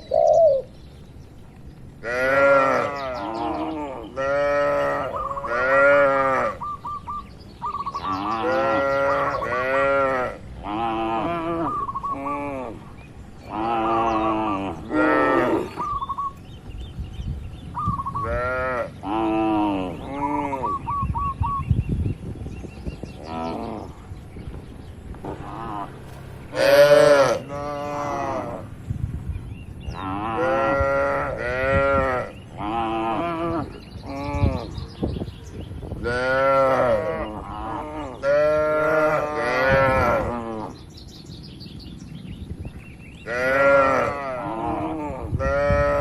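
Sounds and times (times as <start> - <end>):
cows mooing: 2.0 - 6.6, 8.0 - 12.8, 13.5 - 15.9, 18.2 - 20.8, 25.2 - 28.8, 29.9 - 34.8, 36.0 - 40.8, 43.2 - 46.0.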